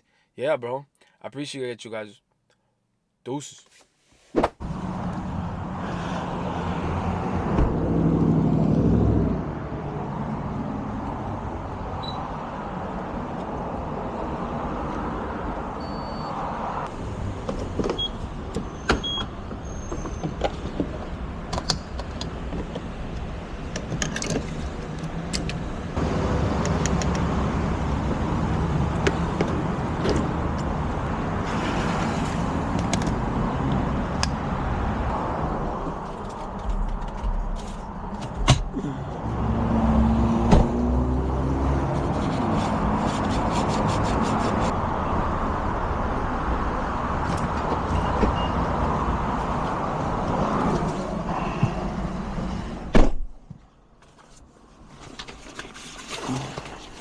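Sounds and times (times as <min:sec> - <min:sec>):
road noise: 0:03.7 - 0:57.0
car engine accelerating: 0:39.1 - 0:43.0.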